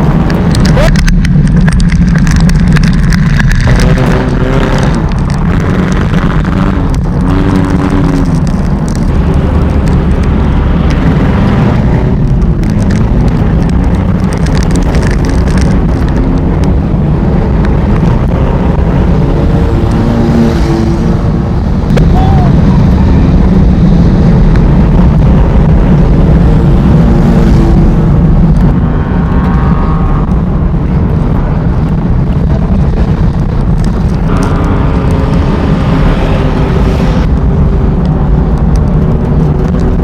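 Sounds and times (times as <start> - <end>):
race car engine revving: 0.0 - 40.0.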